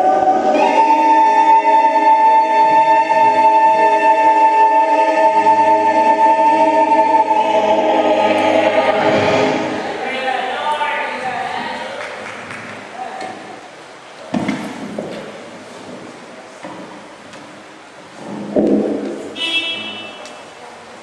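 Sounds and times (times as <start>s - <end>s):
choir singing gospel: 0.0s - 13.6s.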